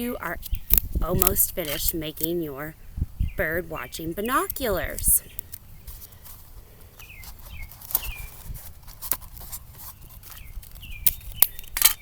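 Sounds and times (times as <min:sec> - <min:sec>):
birds chirping: 0:00.0 - 0:08.6, 0:09.8 - 0:12.0
tape tearing and crackling: 0:05.4 - 0:12.0.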